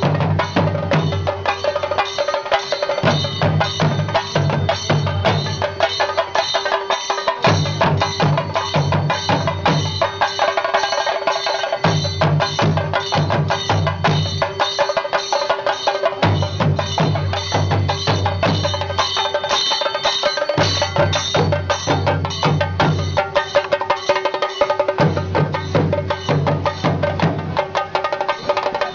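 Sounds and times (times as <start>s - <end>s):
rapid drum strokes: 0.0s - 28.9s
held tone: 0.5s - 27.0s
deep drum layer: 20.6s - 28.9s.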